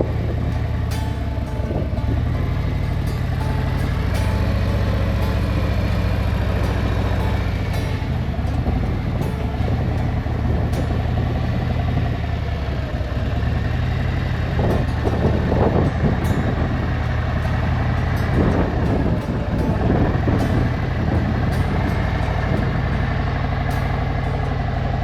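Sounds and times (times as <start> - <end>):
motorcycle engine running: 0.0 - 25.0
rushing wind noise: 0.0 - 25.0.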